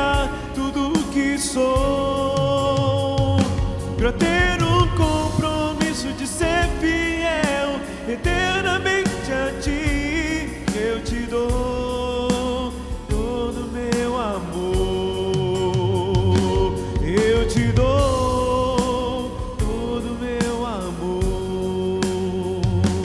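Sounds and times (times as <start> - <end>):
drum kit beat: 0.0 - 23.0
gospel band playing: 0.0 - 23.0
person singing: 0.0 - 23.0.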